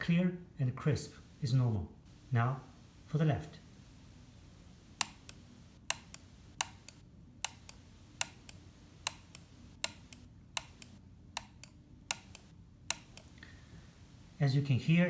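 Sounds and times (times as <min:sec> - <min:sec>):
mouse button clicking: 0:05.0 - 0:13.3.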